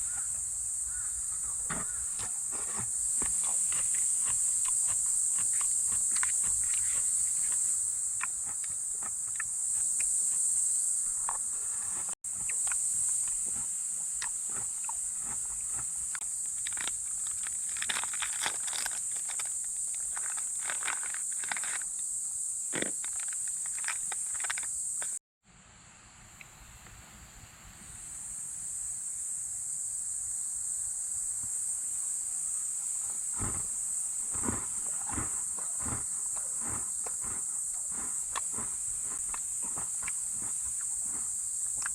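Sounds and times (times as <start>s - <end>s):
insects trilling: 0.0s - 25.2s, 27.8s - 41.9s
footsteps: 1.7s - 7.6s, 33.0s - 41.9s.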